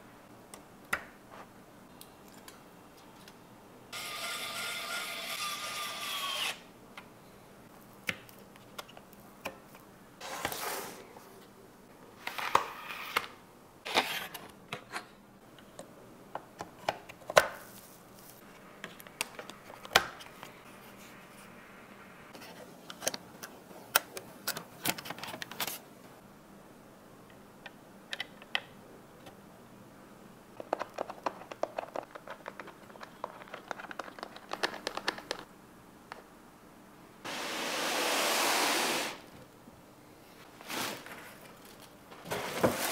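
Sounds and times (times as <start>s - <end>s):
rubbing and rustling scrapes: 40.4s - 41.5s, 42.2s - 42.9s.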